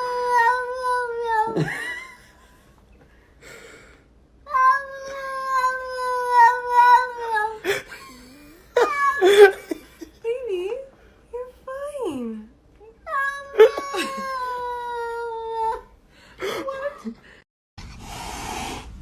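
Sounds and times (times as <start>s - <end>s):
cat yowling: 0.0s - 1.7s, 4.5s - 7.6s, 8.8s - 9.5s, 13.1s - 15.9s.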